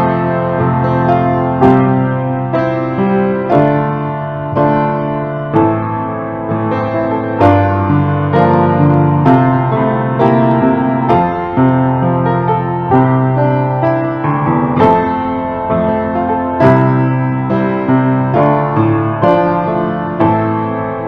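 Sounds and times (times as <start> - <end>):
slow piano piece: 0.0 - 21.0.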